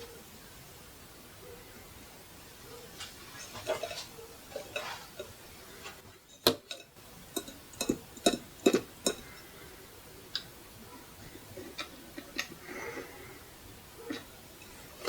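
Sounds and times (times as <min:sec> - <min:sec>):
fingers tapping on clock casing: 0:06.4 - 0:09.4.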